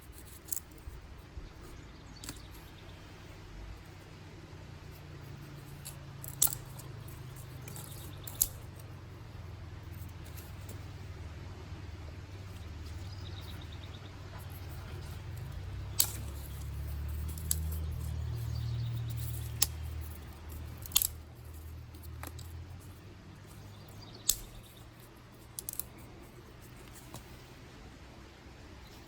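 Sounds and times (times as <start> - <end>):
low steady rumble: 0.0 - 29.0
sticks snapping: 2.2 - 2.7, 5.3 - 8.9, 12.4 - 27.5.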